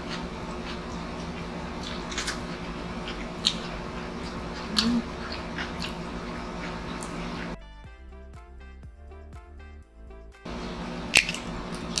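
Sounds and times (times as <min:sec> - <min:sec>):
lip smacks: 0:00.0 - 0:07.6, 0:11.1 - 0:12.0
low hum: 0:00.0 - 0:07.6, 0:10.1 - 0:12.0
wet chewing: 0:00.0 - 0:07.6, 0:10.5 - 0:12.0.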